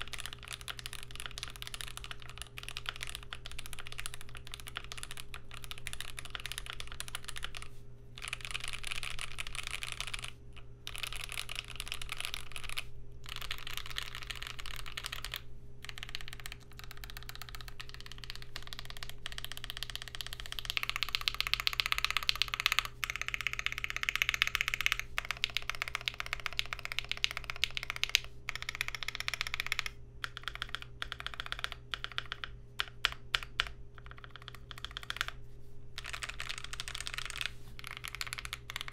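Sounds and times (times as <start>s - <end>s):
typing on mechanical keyboard: 0.0s - 35.4s, 36.0s - 38.9s.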